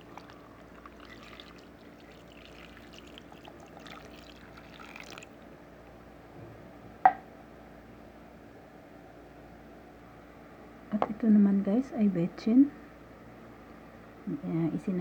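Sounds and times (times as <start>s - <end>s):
water poured into pot: 0.0s - 5.4s.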